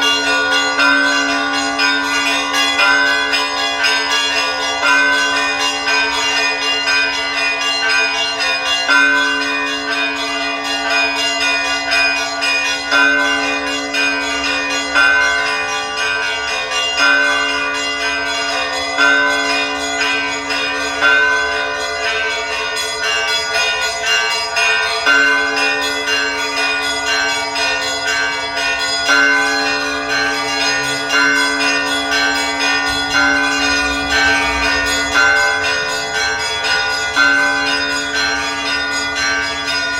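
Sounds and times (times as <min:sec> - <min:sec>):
small church bells pealing: 0:00.0 - 0:39.9
deep bell striking: 0:25.2 - 0:39.9.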